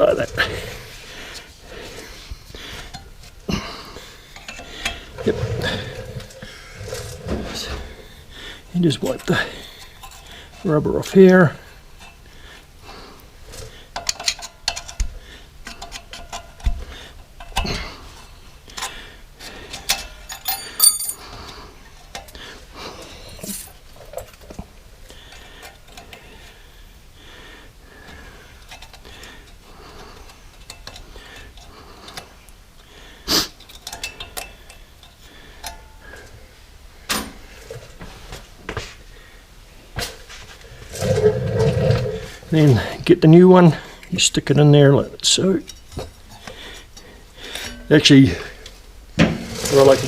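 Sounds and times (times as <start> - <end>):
metal tools clinking and knocking: 14.0 - 15.0, 19.7 - 21.4, 23.3 - 24.6, 33.6 - 36.0.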